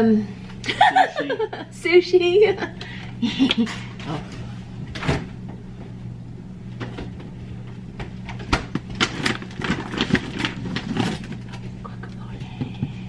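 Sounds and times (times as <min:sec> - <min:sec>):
steady low hum: 0:00.0 - 0:13.0
plastic packaging crinkling: 0:08.7 - 0:11.7.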